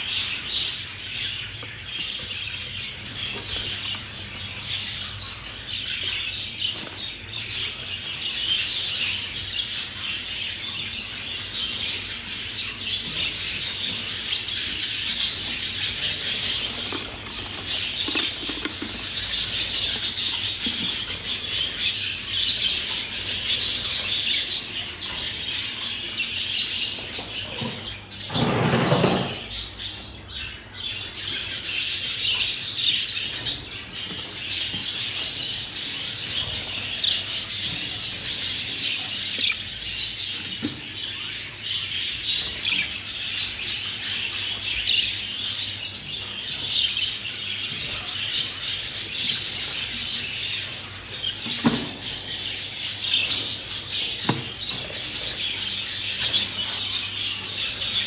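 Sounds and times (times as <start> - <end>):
budgerigars chattering and chirping: 0.0 - 58.0.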